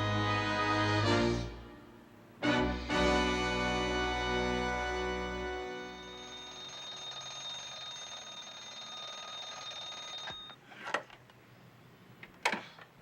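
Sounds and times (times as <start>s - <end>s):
alarm clock ringing: 5.7s - 10.6s.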